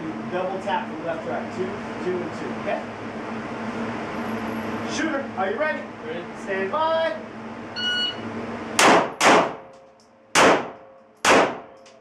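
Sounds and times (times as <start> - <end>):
shot timer beep: 7.8 - 8.2
handgun shots: 8.8 - 9.7, 10.4 - 12.0.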